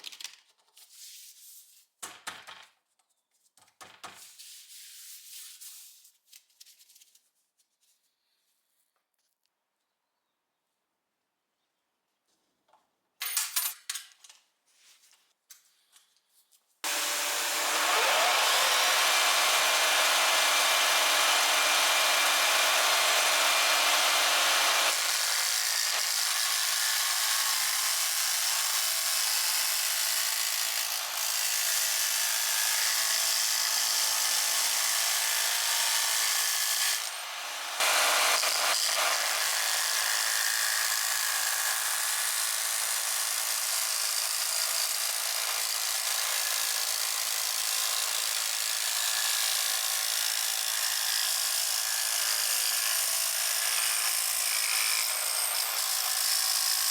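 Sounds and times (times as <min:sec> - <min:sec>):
jigsaw sawing through wood: 0:16.8 - 0:56.9.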